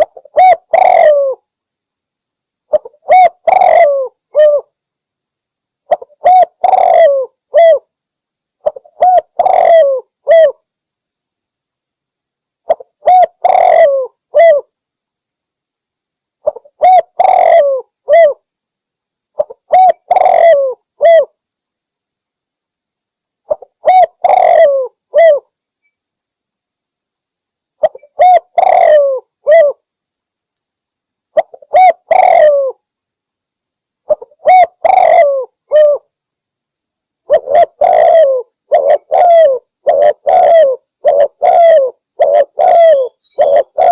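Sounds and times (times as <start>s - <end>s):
dove cooing: 0.0s - 1.4s, 2.7s - 4.7s, 5.9s - 7.9s, 8.6s - 10.6s, 12.7s - 14.7s, 16.4s - 18.4s, 19.4s - 21.3s, 23.5s - 25.5s, 27.8s - 29.8s, 31.4s - 32.8s, 34.1s - 36.1s, 37.3s - 43.9s.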